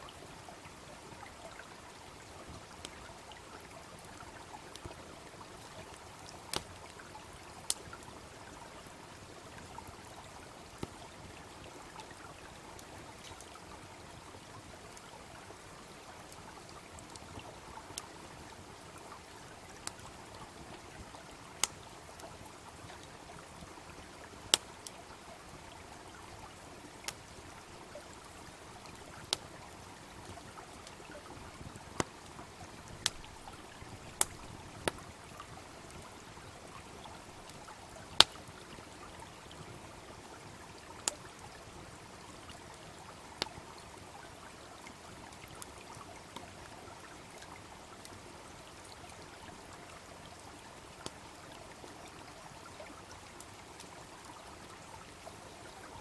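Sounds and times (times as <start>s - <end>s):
babbling brook: 0.0s - 56.0s
wood fire crackling and popping: 32.8s - 35.0s, 38.2s - 38.4s.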